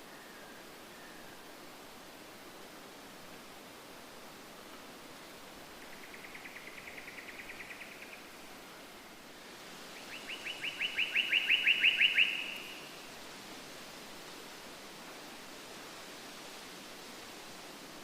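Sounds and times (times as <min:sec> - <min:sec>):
steady hiss: 0:00.0 - 0:18.0
bird trilling: 0:10.2 - 0:12.8.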